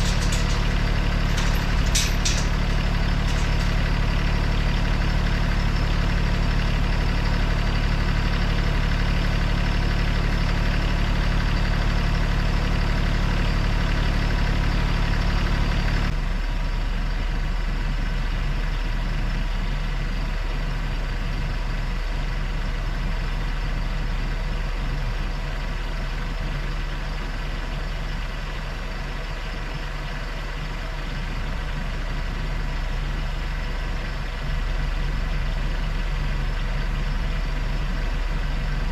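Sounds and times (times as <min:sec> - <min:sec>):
vehicle engine running: 0:00.0 - 0:21.9.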